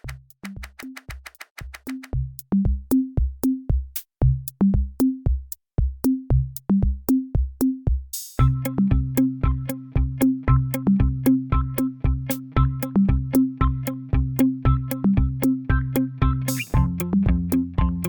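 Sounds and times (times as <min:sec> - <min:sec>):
hi-hat ticks: 0:00.0 - 0:02.5
bass drum thumps: 0:00.0 - 0:15.8, 0:16.6 - 0:18.0
bass line: 0:08.4 - 0:18.0.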